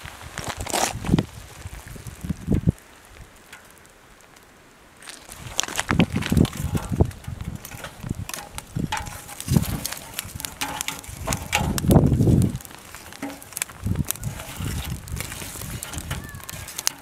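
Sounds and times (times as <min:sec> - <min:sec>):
logs thumping in metal brazier: 0:05.0 - 0:17.0.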